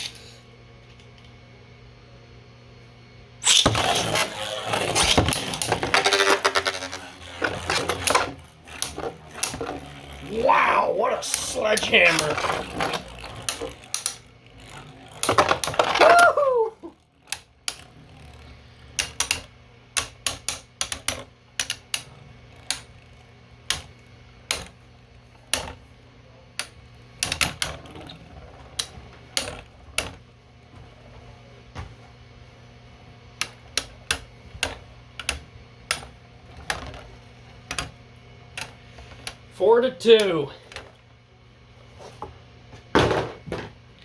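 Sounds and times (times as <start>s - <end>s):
spinning tops clacking together: 3.4s - 10.4s.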